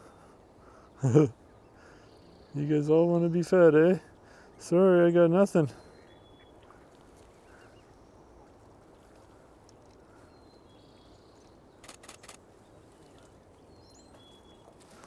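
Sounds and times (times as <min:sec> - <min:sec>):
distant bird calls: 0:00.0 - 0:15.0
camera shutter clicks: 0:11.8 - 0:12.4.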